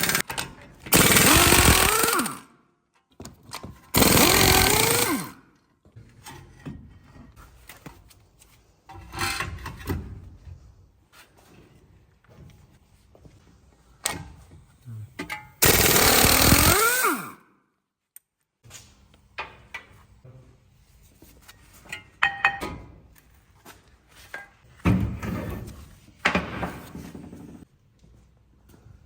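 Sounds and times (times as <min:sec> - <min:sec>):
power tool burst: 0:00.9 - 0:02.4, 0:04.0 - 0:05.4, 0:15.6 - 0:17.4.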